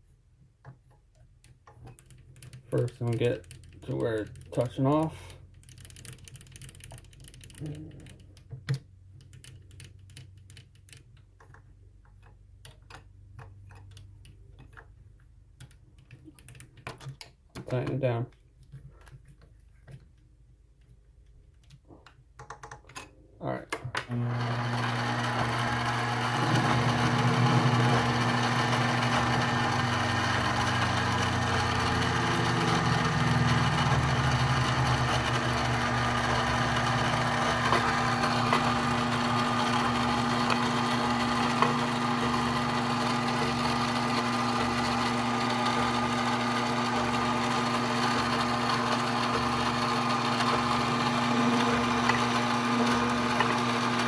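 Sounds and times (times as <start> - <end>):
lathe motor hum: 24.1 - 54.0.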